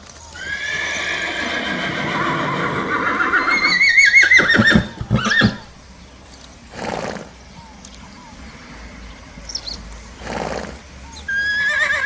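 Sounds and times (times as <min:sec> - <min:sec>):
horse whinnying: 0:00.4 - 0:05.7, 0:11.3 - 0:12.0.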